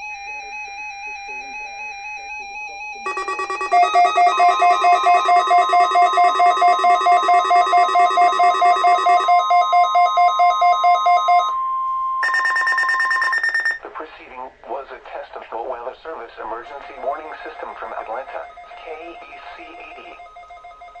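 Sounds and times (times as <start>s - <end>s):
steady warning alarm tone: 3.0s - 11.6s, 12.2s - 13.8s, 17.0s - 21.0s
high-pitched alarm beeps: 3.1s - 11.6s, 12.2s - 13.8s
electronic alarm beeping: 3.1s - 13.8s, 17.0s - 21.0s.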